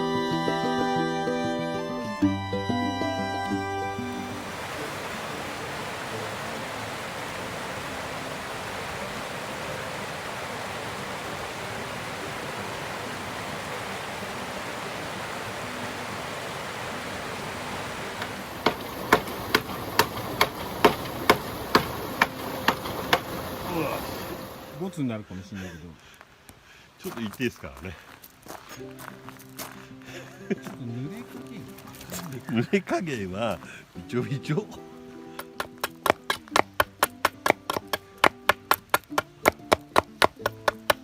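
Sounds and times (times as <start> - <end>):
flowing stream: 2.7 - 41.0
sharp knocks: 18.2 - 23.6.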